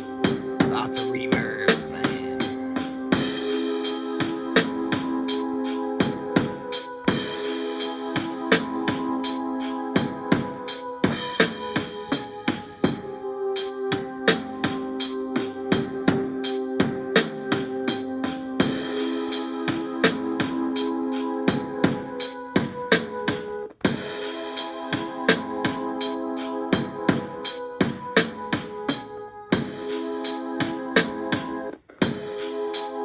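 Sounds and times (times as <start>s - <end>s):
held keyboard notes: 0.0s - 33.0s
drum hits: 0.3s - 3.2s.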